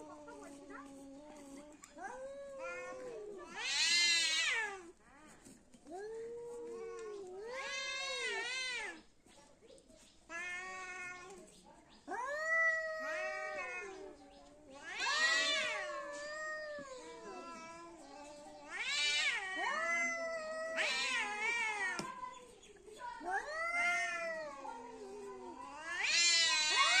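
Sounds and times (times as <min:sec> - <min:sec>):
cats yowling in a fight: 0:00.0 - 0:04.9, 0:05.9 - 0:09.0, 0:12.1 - 0:18.0, 0:18.6 - 0:22.2, 0:23.2 - 0:27.0.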